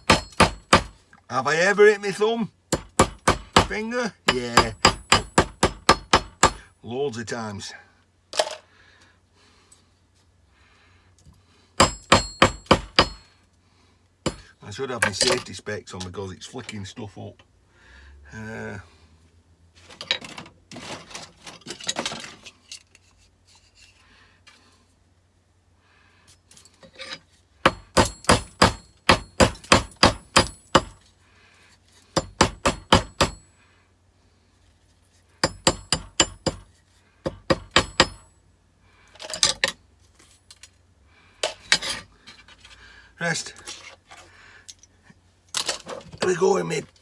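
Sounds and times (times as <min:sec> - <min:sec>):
hammer striking electronic components: 0:00.0 - 0:00.9, 0:11.8 - 0:13.2.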